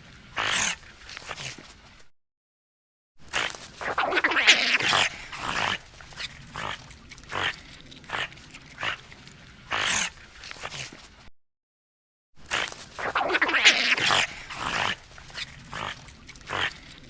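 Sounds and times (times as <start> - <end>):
otter harsh calls: 3.3 - 9.0, 9.7 - 11.0, 12.4 - 16.9.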